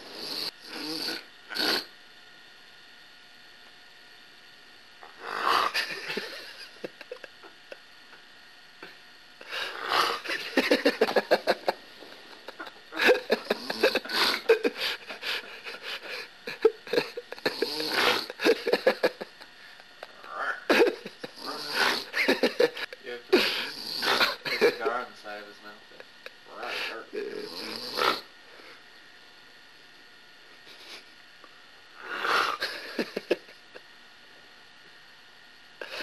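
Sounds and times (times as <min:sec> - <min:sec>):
man snoring heavily: 0:00.0 - 0:01.9, 0:05.0 - 0:06.6, 0:09.4 - 0:11.7, 0:13.0 - 0:19.2, 0:20.2 - 0:24.8, 0:26.6 - 0:28.3, 0:32.0 - 0:33.2.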